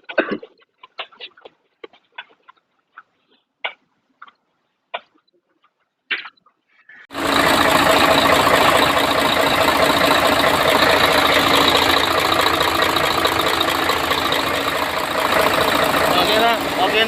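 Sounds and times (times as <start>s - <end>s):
truck engine running: 7.1s - 17.0s
rapid knocking: 7.2s - 17.0s.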